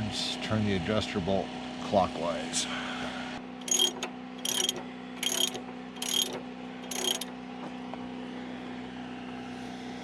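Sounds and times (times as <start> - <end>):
ratchet clicking: 3.6 - 7.3.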